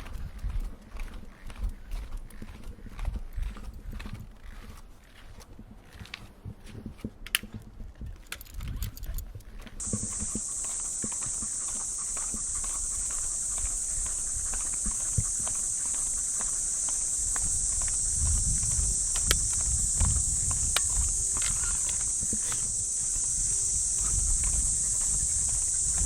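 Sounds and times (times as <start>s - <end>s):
cicada buzzing: 9.8s - 26.0s
footsteps on path: 9.8s - 26.0s.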